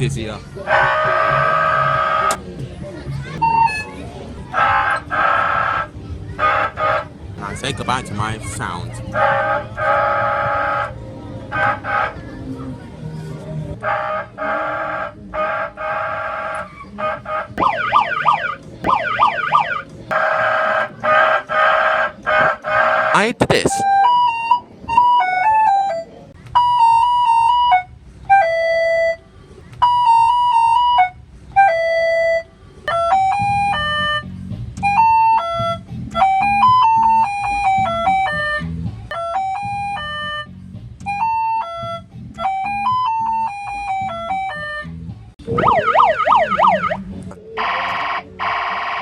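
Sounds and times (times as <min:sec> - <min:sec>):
warbling siren sweep: 0:17.6 - 0:19.8, 0:45.4 - 0:47.0.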